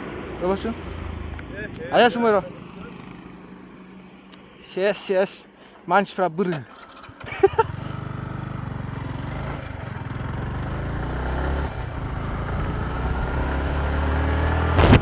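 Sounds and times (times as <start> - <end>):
motorcycle engine accelerating: 0.8 - 3.7, 6.7 - 15.0.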